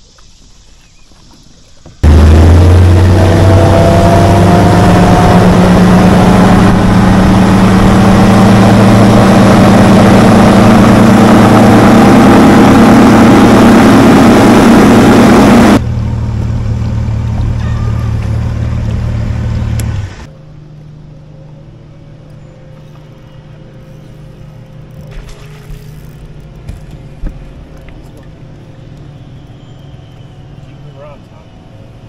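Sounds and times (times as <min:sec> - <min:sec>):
outboard motor running: 0:01.8 - 0:32.0
wind and water rushing: 0:02.2 - 0:15.4.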